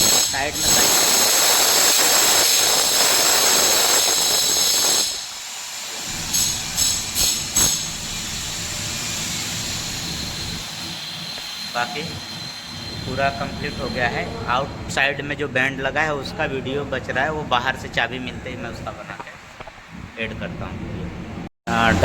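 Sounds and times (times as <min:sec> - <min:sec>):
air rushing from duct: 0:00.0 - 0:13.4.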